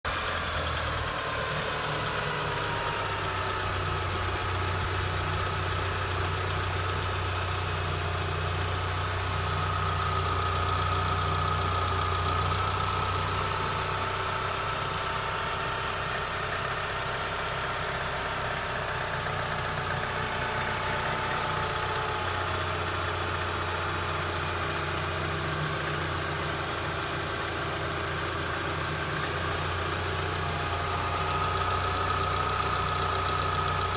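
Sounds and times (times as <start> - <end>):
car engine idling: 0.0 - 33.9.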